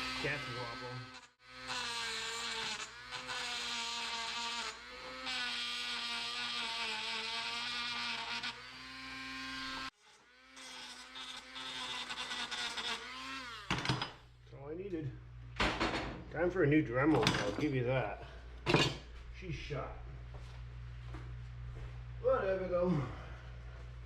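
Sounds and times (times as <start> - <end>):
rotary tool grinding metal: 0.0 - 14.2.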